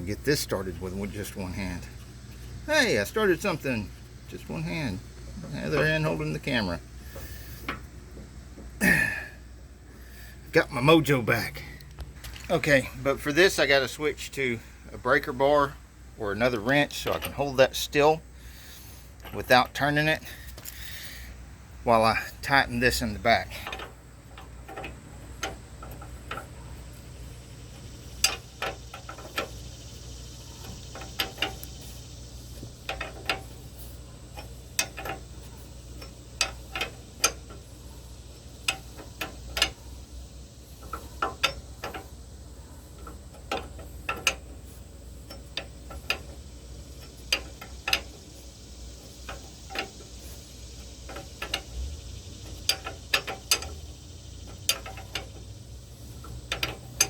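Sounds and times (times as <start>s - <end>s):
hand ratchet clicking: 22.8s - 57.0s.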